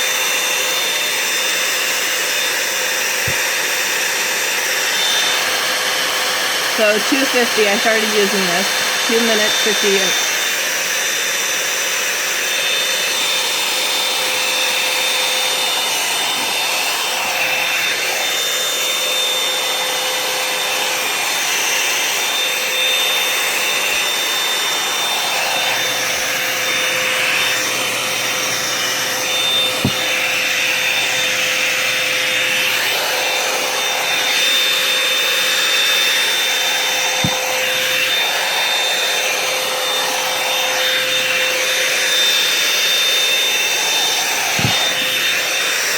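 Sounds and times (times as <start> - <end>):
hot-air brush blowing: 0.0 - 45.9.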